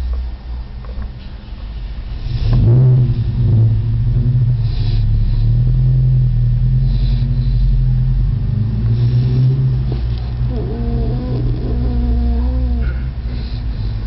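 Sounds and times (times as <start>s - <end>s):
dog snoring loudly: 4.6s - 5.6s, 6.7s - 14.0s
breathy hiss: 12.6s - 14.0s.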